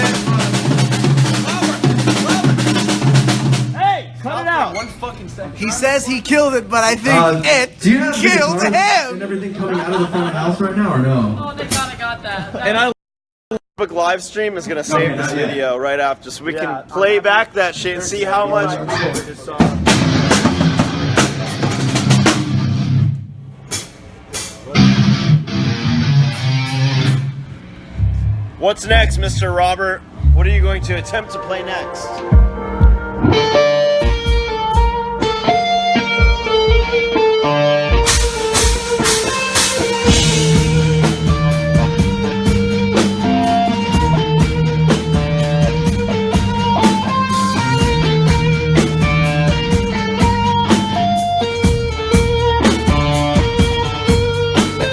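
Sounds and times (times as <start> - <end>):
drum hits: 0.0 - 3.8, 37.9 - 54.9
rock band playing live: 0.0 - 3.8, 6.0 - 9.1, 19.1 - 54.9
drum kit beat: 0.0 - 4.2, 5.8 - 9.2, 19.1 - 31.4, 32.2 - 54.9
electric guitar: 19.8 - 23.3, 24.7 - 29.6, 32.1 - 54.9.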